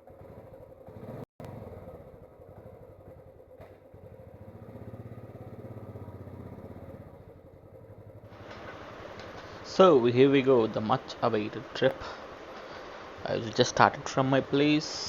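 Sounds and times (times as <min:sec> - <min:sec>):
motorcycle engine thumping: 0:00.0 - 0:10.0.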